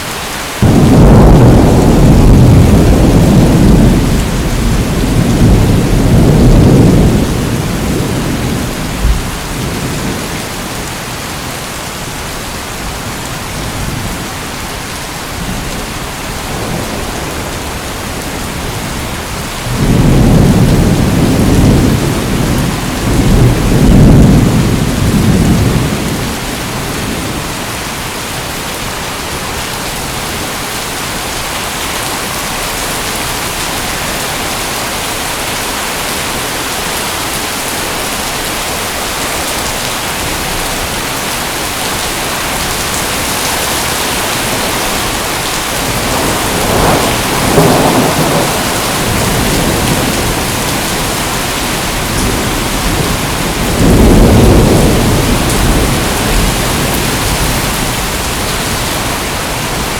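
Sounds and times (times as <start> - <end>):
heavy rain hissing: 0.0 - 59.9
low thunder rumbling: 0.6 - 11.1, 12.8 - 27.8, 39.5 - 59.9.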